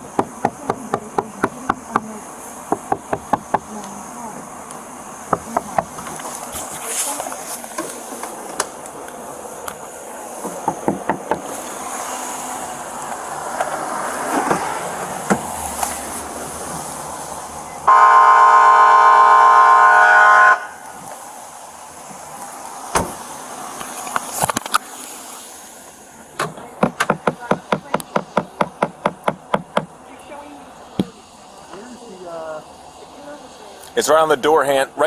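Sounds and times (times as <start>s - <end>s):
loud steady horn blast: 17.9s - 20.9s.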